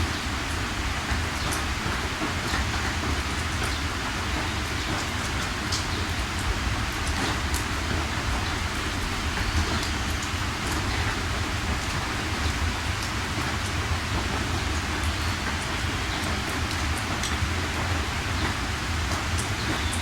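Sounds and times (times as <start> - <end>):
heavy rain hissing: 0.0 - 20.0
raindrops ticking: 0.0 - 20.0.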